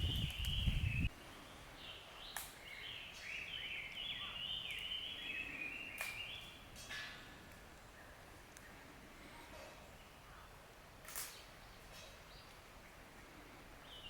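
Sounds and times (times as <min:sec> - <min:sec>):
bird singing: 0:00.0 - 0:06.8, 0:11.3 - 0:14.0.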